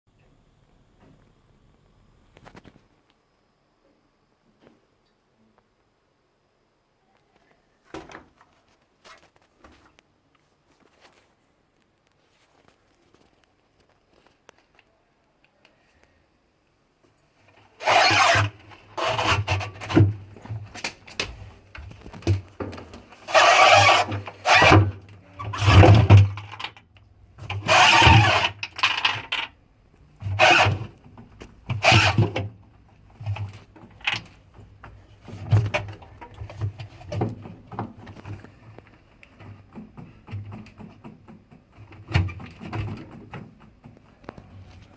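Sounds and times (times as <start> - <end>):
grinding and scraping bursts: 17.7 - 22.4, 23.1 - 26.8, 27.4 - 29.5, 30.2 - 31.0, 31.7 - 32.5.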